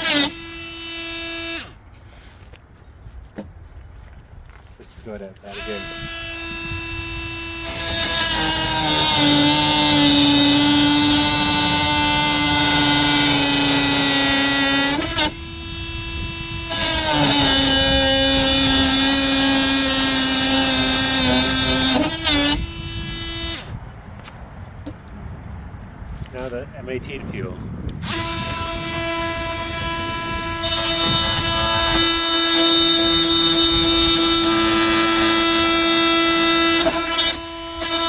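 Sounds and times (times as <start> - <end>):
oscillating multi-tool cutting wood: 0.0 - 1.8, 5.4 - 23.9, 28.0 - 38.0.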